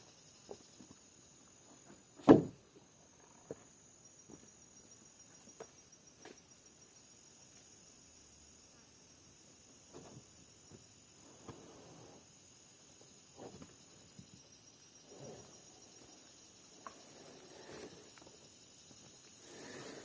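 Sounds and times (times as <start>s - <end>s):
high insect drone: 0.0s - 20.0s
loud thump: 2.2s - 2.6s.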